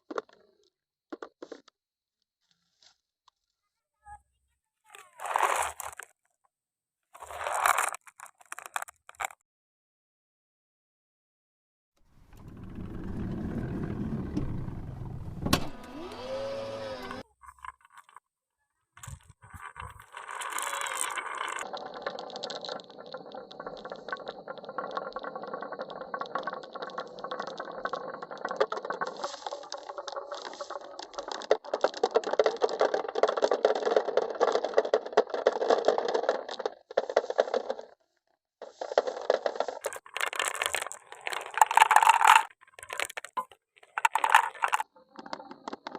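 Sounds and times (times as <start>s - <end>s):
marbles rattling down wooden run: 5.1s - 6.1s, 7.2s - 9.4s, 19.0s - 38.0s, 38.6s - 45.9s.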